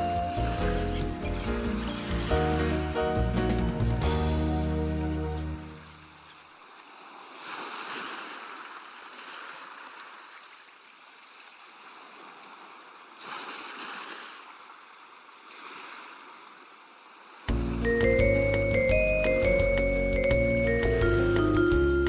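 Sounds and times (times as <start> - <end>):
water sloshing in washing machine: 0.0 - 4.0.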